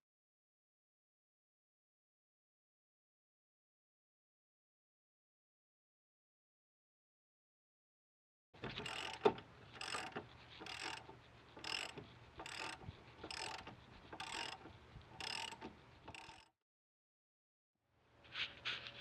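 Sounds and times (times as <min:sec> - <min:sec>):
ratchet wrench clicking: 0:08.7 - 0:16.5.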